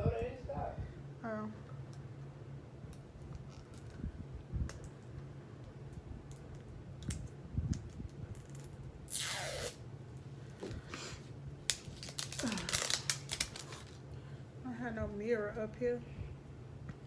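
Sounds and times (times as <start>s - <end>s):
light clicks and rustles of packaging: 11.6s - 14.1s.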